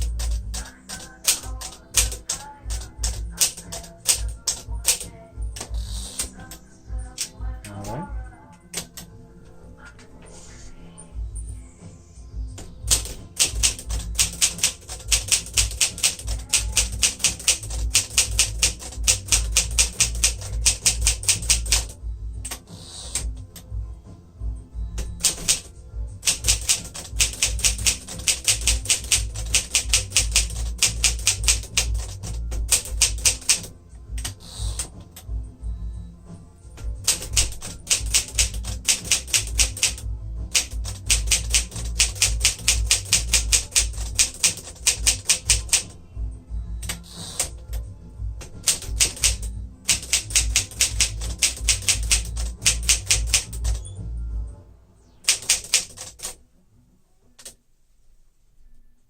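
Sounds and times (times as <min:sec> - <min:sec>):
manual typewriter key strikes: 0:00.0 - 0:05.0, 0:12.9 - 0:21.9, 0:25.2 - 0:34.9, 0:37.0 - 0:45.9, 0:48.6 - 0:53.9, 0:55.3 - 0:56.4.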